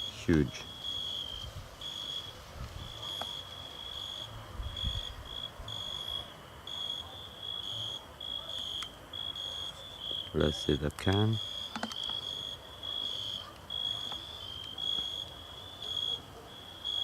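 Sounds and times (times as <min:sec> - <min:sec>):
crickets chirping: 0:00.0 - 0:17.0.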